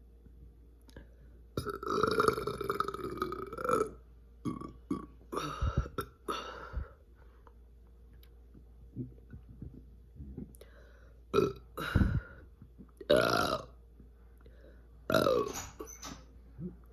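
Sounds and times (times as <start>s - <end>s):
person burping: 1.6s - 6.6s, 11.3s - 12.4s, 13.0s - 13.8s, 15.1s - 15.5s.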